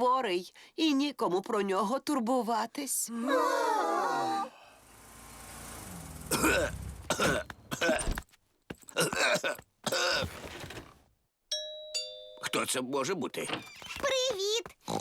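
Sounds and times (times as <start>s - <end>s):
falling glide of tones: 4.6s - 7.1s
man coughing: 6.3s - 8.2s, 8.9s - 10.4s.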